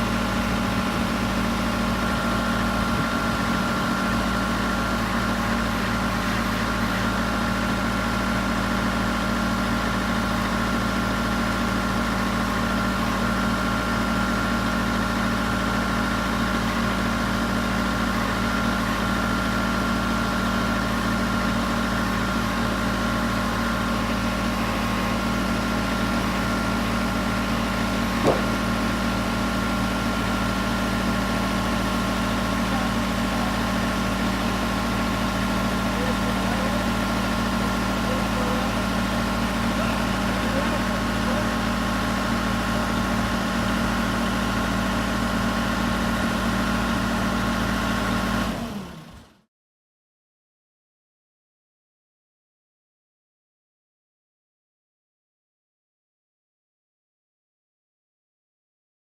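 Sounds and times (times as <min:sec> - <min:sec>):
backhoe engine idling: 0:00.0 - 0:49.4
sharp knock: 0:28.2 - 0:28.6.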